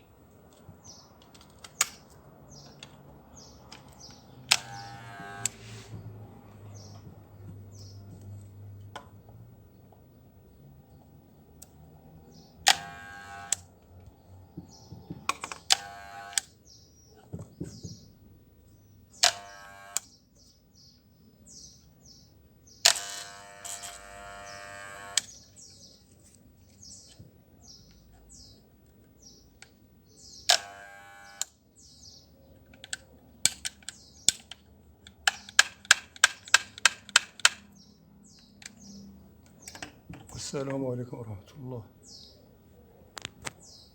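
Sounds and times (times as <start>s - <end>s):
hair clipper buzzing: 4.5s - 5.7s, 12.7s - 13.6s, 15.7s - 16.4s, 19.2s - 20.0s, 22.9s - 25.4s, 30.5s - 31.5s.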